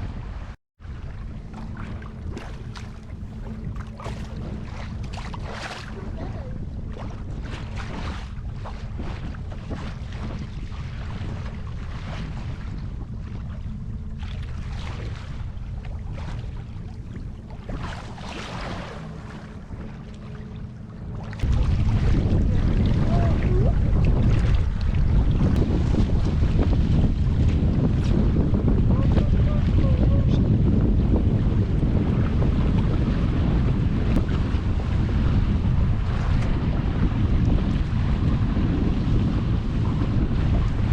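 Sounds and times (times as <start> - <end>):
boat motor humming: 0.0 - 40.9
water splashing against hull: 0.0 - 40.9
wind on microphone: 0.0 - 40.9.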